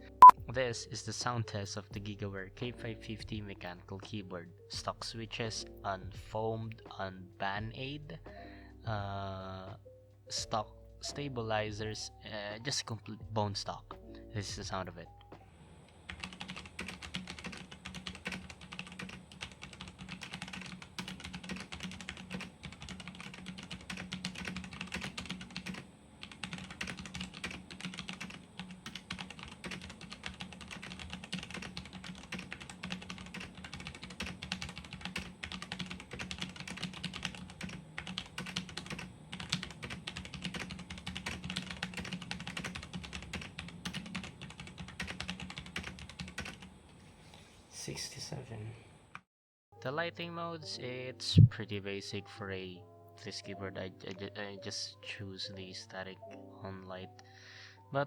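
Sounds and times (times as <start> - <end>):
mechanical keyboard typing: 16.1 - 46.7
low steady hum: 49.8 - 51.9.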